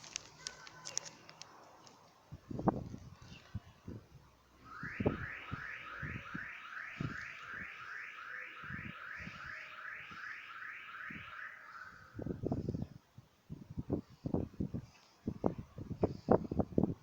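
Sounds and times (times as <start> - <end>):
warbling electronic alarm: 4.6 - 12.4.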